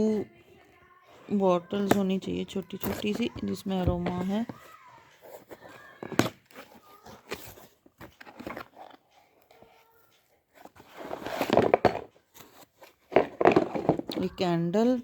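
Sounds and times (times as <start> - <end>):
packaging rustling and crinkling: 5.2 - 9.8, 10.6 - 14.2.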